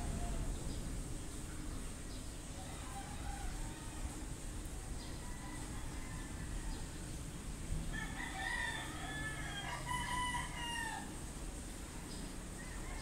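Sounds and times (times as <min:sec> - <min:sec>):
rooster crowing: 0:00.0 - 0:00.5, 0:02.6 - 0:04.2, 0:05.2 - 0:07.0, 0:07.9 - 0:11.1, 0:12.6 - 0:13.0
steady background hiss: 0:00.0 - 0:13.0.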